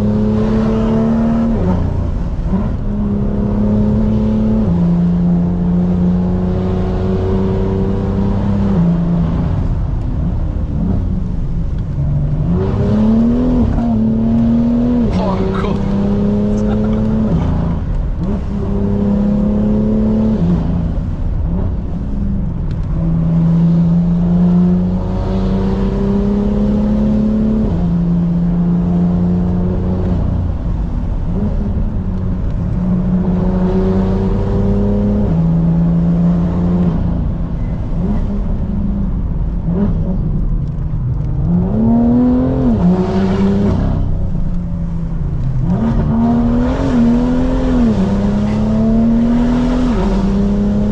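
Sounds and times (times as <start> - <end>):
car engine driving hard: 0.0 - 50.9
engine revving: 12.2 - 20.7, 45.4 - 50.9.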